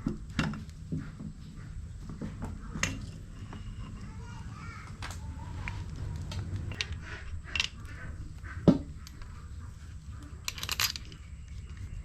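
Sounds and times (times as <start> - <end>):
metal tools clinking and knocking: 6.7 - 7.9, 10.4 - 11.4.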